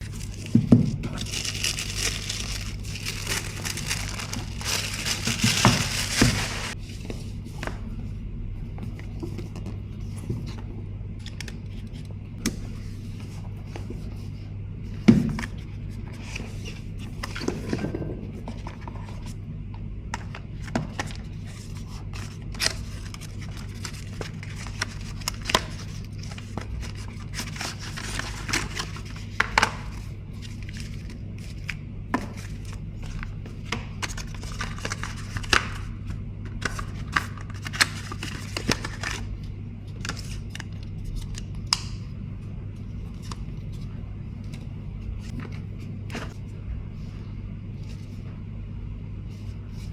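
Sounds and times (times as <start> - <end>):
wrapping crinkling and tearing: 0.0 - 6.8.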